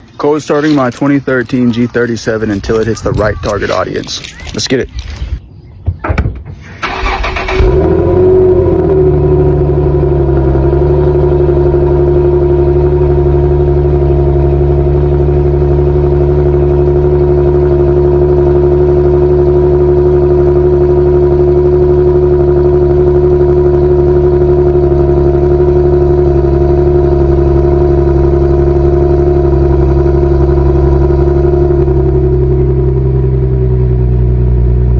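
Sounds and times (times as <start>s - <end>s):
car engine idling: 0.0s - 5.4s, 6.5s - 34.9s
starter motor cranking: 6.6s - 8.0s.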